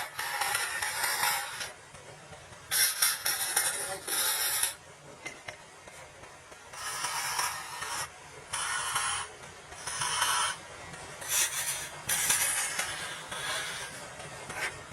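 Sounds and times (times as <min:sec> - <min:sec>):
hand tool scraping wood: 0:11.2 - 0:14.9.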